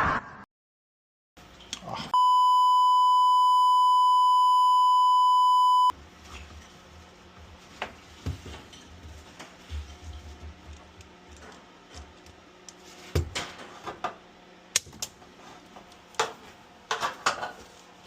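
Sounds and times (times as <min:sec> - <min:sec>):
censor bleep tone: 0:02.2 - 0:05.9.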